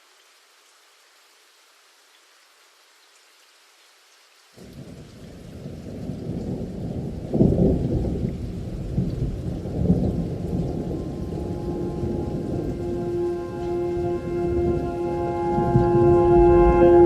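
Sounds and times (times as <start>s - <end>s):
rain: 0.0s - 17.0s
thunder rumbling: 5.6s - 17.0s.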